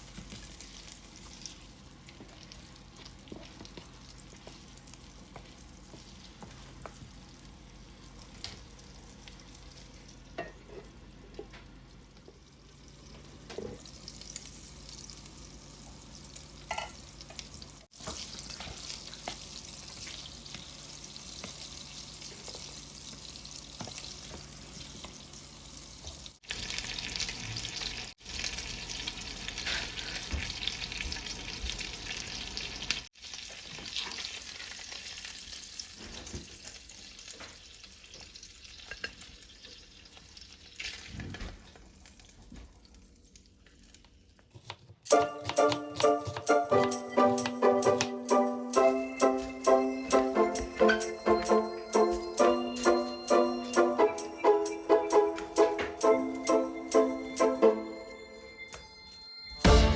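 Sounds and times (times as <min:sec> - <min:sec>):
food sizzling in a frying pan: 0:00.0 - 0:10.9, 0:12.3 - 0:44.4.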